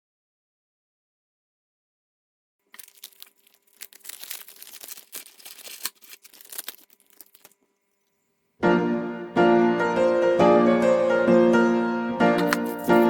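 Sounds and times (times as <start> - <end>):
crinkling and rustling: 2.7 - 8.2, 12.4 - 13.0
faint steady hum: 2.7 - 8.6
piano music: 8.6 - 13.0.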